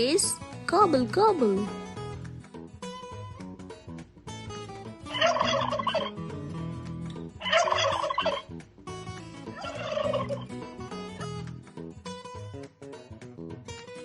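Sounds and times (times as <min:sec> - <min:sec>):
light background music: 0:00.0 - 0:14.0
turkey gobbling: 0:05.1 - 0:06.1, 0:07.4 - 0:08.5, 0:09.6 - 0:10.5.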